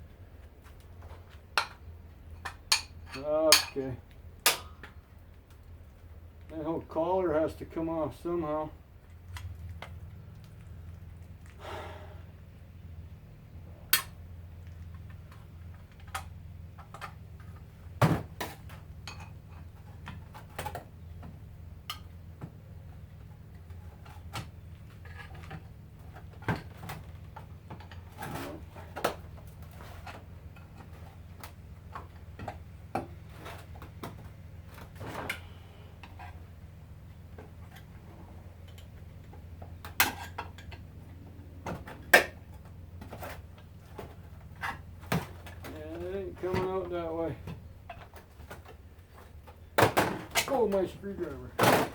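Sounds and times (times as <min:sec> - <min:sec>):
hand tools clinking on metal: 0:02.4 - 0:04.8.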